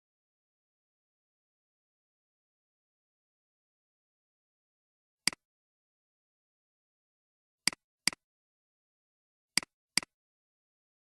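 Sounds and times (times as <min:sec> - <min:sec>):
computer mouse clicks: 0:07.7 - 0:08.2, 0:09.6 - 0:10.2.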